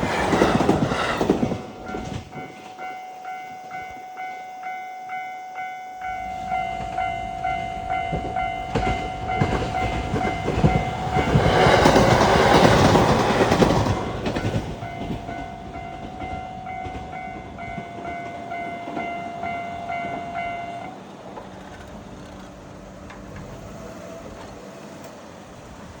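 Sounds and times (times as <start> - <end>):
train rushing past: 0.0 - 4.4, 5.9 - 26.0
level-crossing bell ringing: 1.8 - 20.9
wheels clattering over rails: 6.2 - 26.0.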